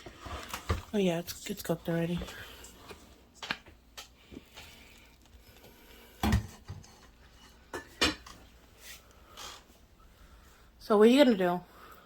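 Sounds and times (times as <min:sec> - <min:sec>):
dishes and utensils clinking: 0:06.3 - 0:08.4.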